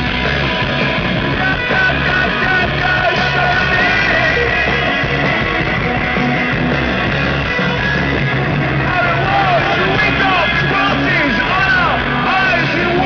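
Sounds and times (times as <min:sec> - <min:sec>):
live rock band playing: 0:00.0 - 0:13.0
person singing: 0:01.3 - 0:05.4.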